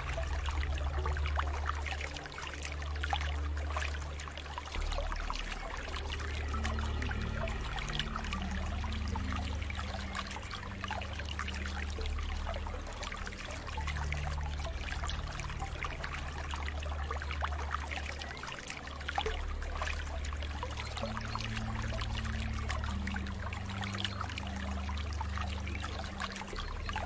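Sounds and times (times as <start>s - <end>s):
steady low rumble: 0.0s - 17.9s
water flowing and trickling: 0.0s - 27.0s.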